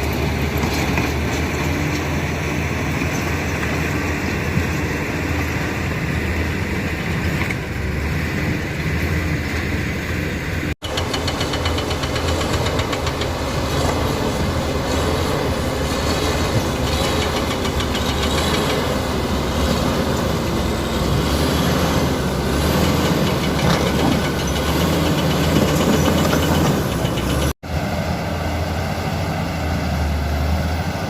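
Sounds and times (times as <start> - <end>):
bulldozer diesel engine running: 0.0 - 31.0
fast metallic clatter: 10.8 - 19.2, 22.8 - 27.6.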